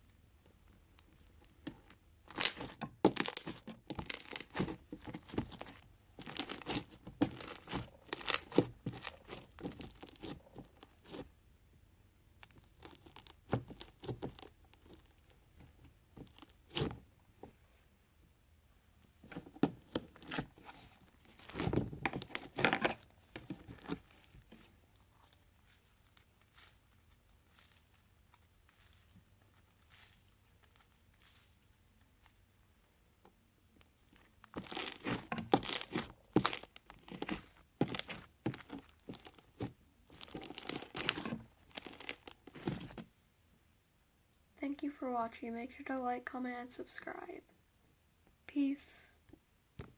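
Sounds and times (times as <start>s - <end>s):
slime crackling and popping: 1.0s - 11.3s, 12.4s - 15.3s, 16.2s - 17.0s, 19.6s - 24.4s, 25.2s - 32.4s, 34.1s - 43.1s.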